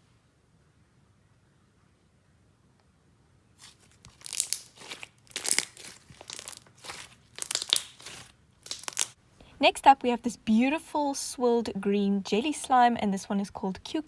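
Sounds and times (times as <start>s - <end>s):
crackly sticky slime bursts: 3.6s - 9.2s
hands squishing slime: 3.6s - 9.2s.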